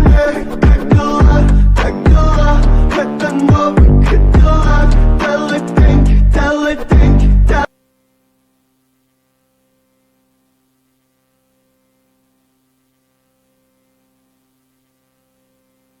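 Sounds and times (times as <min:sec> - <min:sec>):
faint electrical hum: 0:07.7 - 0:16.0.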